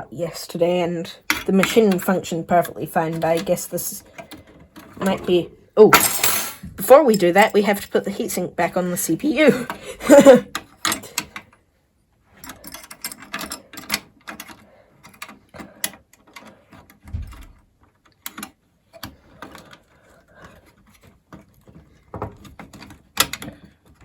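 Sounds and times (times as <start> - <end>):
clicks and scrapes of parts: 3.0 - 5.4, 12.3 - 24.0.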